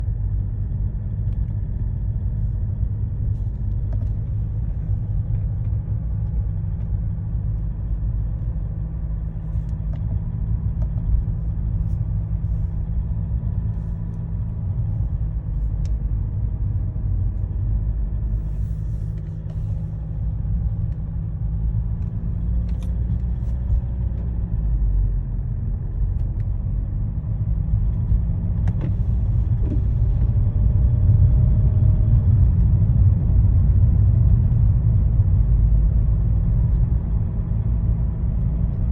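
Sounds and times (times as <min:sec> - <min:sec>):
diesel engine running: 0:00.0 - 0:38.9
faint engine clicks: 0:09.4 - 0:17.6, 0:18.9 - 0:26.7.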